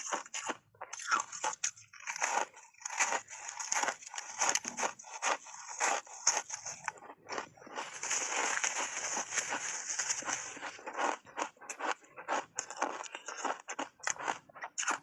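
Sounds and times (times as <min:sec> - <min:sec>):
ice bars crunching when bitten: 0:00.0 - 0:15.0.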